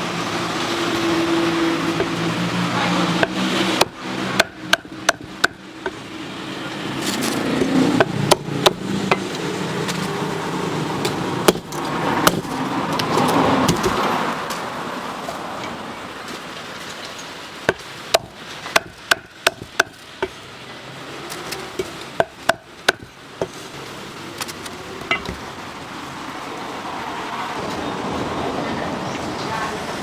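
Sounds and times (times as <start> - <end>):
steady background noise: 0.0 - 30.0
cleaver chopping on wooden board: 3.2 - 6.0, 7.0 - 10.0, 11.1 - 14.1, 17.6 - 20.4, 21.7 - 23.6.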